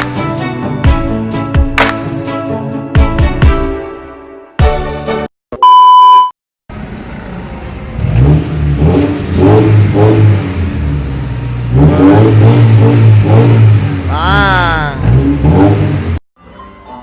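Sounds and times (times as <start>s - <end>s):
music: 0.0s - 5.3s, 16.4s - 17.0s
loud steady beep: 5.6s - 6.3s
car engine revving: 6.7s - 16.2s.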